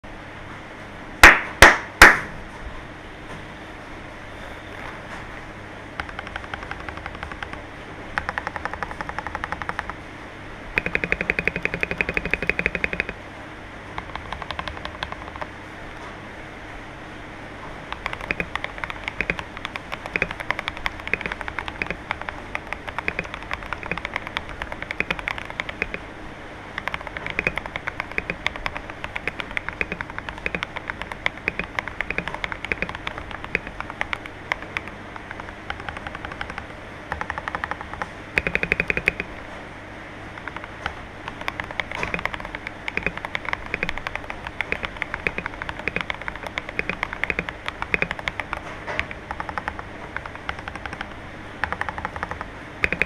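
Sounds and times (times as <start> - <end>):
mechanical keyboard typing: 6.0 - 10.0, 10.8 - 13.2, 14.0 - 15.6, 17.8 - 26.1, 26.7 - 39.3, 40.3 - 53.0.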